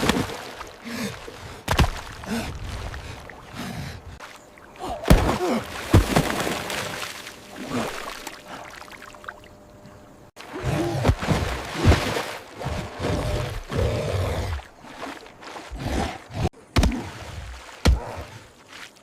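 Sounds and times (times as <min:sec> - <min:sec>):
water sloshing and splashing: 0:00.0 - 0:19.0.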